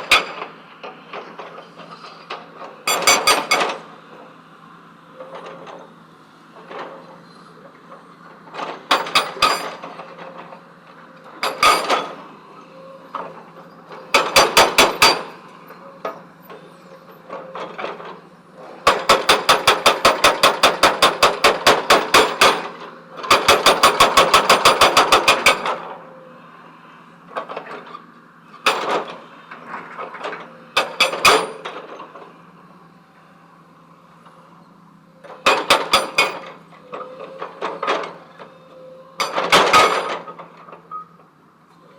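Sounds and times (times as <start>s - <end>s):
hydraulic breaker hammering stone: 0.0s - 0.5s, 2.9s - 3.8s, 8.6s - 10.0s, 11.4s - 12.2s, 14.1s - 15.4s, 18.8s - 25.9s, 30.8s - 32.0s, 35.2s - 38.2s, 39.2s - 41.0s.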